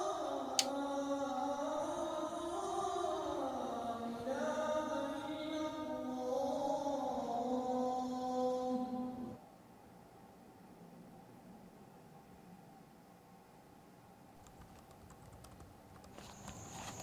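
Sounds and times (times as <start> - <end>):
slow chant-like music: 0.0 - 9.4.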